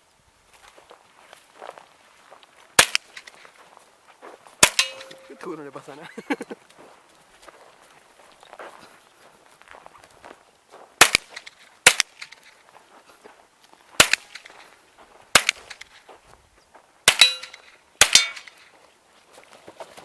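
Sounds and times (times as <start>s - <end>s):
rifle shots: 2.8s - 3.4s, 4.6s - 5.5s, 11.0s - 12.5s, 14.0s - 14.6s, 15.3s - 16.0s, 17.0s - 18.6s
metallic ring: 4.7s - 5.5s, 17.2s - 18.6s.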